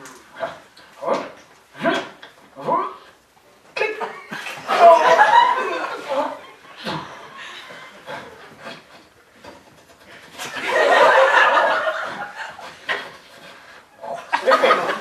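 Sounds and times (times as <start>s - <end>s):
audience laughing: 4.1s - 8.8s, 10.2s - 15.0s.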